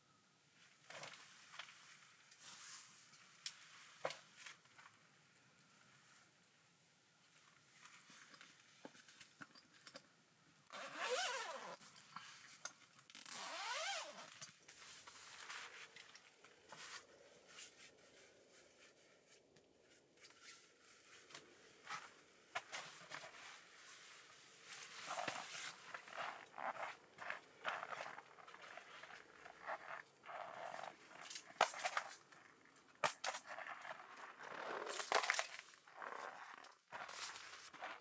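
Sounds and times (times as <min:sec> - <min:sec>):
zipper pulled: 0:10.7 - 0:11.8, 0:13.2 - 0:14.5, 0:24.7 - 0:38.0.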